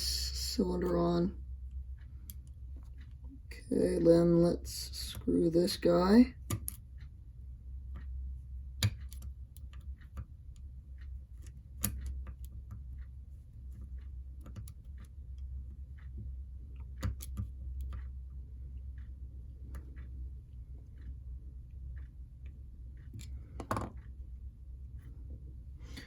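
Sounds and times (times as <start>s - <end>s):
low hum: 0.0s - 9.7s.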